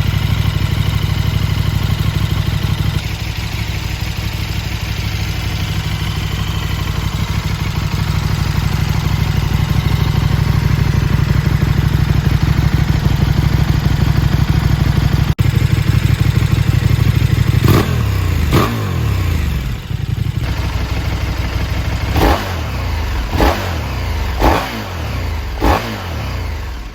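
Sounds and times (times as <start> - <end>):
motorcycle engine idling: 0.0 - 26.9
engine throttle blips: 17.6 - 26.9.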